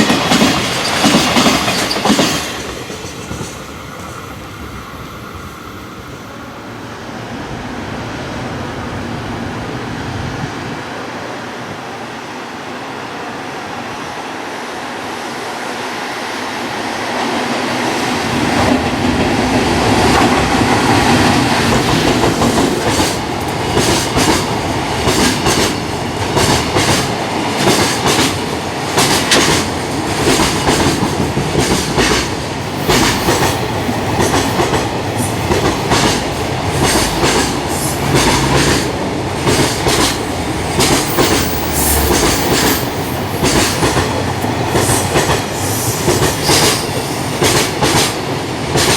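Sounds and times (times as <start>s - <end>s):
train wheels clacking on rail joints: 0.0s - 4.3s, 18.5s - 48.9s.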